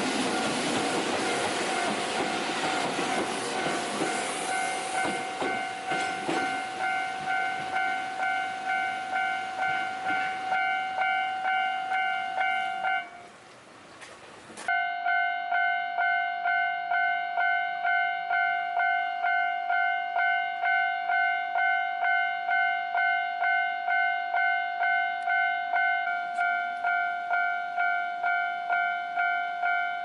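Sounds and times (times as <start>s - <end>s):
train rumbling: 0.0s - 14.8s
level crossing bell ringing: 3.6s - 13.2s.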